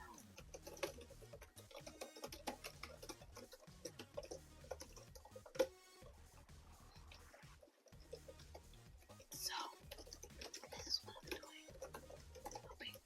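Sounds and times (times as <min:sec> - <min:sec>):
close-up clicking: 0:00.0 - 0:05.8, 0:07.9 - 0:13.0
soft background music: 0:00.0 - 0:13.0.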